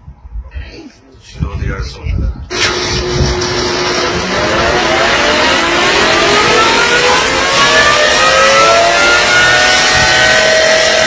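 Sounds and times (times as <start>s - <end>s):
siren winding up: 2.5s - 11.0s.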